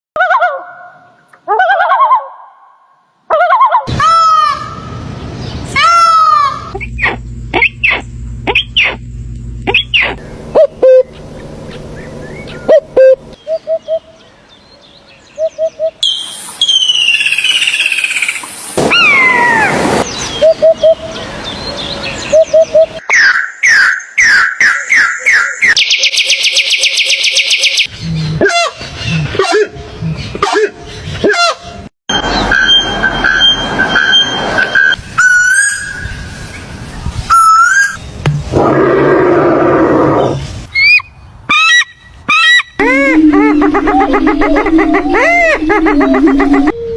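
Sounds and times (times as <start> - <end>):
bird whistling: 6.8 - 9.0, 9.7 - 10.2, 10.8 - 14.2, 15.4 - 19.3, 37.3 - 38.0
bird high falling notes: 42.8 - 46.9.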